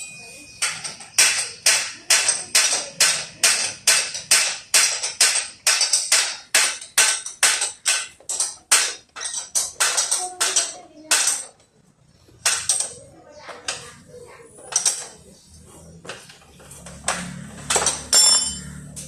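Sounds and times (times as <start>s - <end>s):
hammer striking metal: 0.6s - 11.6s, 16.9s - 19.0s.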